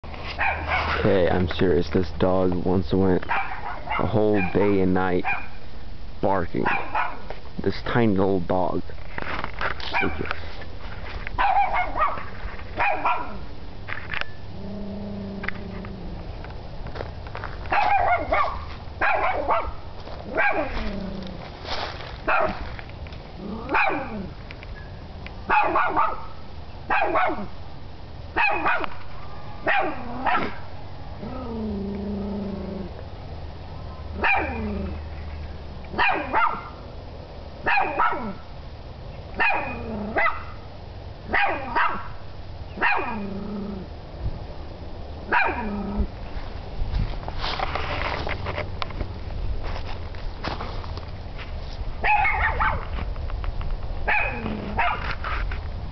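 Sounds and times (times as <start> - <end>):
small dog barking: 0.4 - 1.0, 3.3 - 5.6, 6.6 - 7.3, 9.9 - 10.3, 11.4 - 13.5, 17.7 - 21.0, 22.2 - 22.6, 23.6 - 24.3, 25.5 - 27.5, 28.4 - 29.0, 29.6 - 30.6, 34.2 - 34.7, 35.9 - 36.8, 37.6 - 38.4, 39.4 - 40.6, 41.3 - 42.2, 42.8 - 43.3, 45.3 - 45.8, 52.0 - 52.9, 54.1 - 55.1
dog growling: 14.5 - 16.2, 20.2 - 21.5, 23.4 - 24.4, 31.2 - 33.0, 34.2 - 35.0, 39.6 - 40.3, 43.0 - 43.9, 45.3 - 46.1, 54.2 - 55.0.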